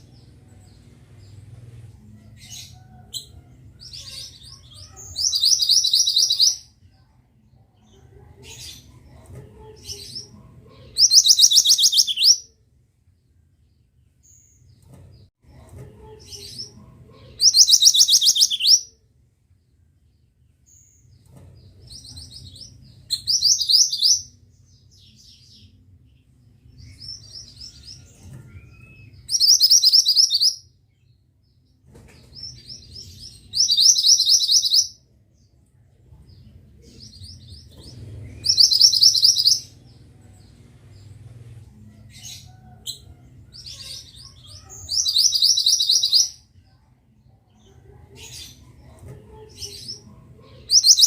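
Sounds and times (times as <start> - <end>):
soft bird chirps: 10.9 - 12.5, 17.4 - 18.9, 26.8 - 31.1, 32.1 - 35.7, 36.3 - 41.4, 42.1 - 46.4, 50.7 - 51.0.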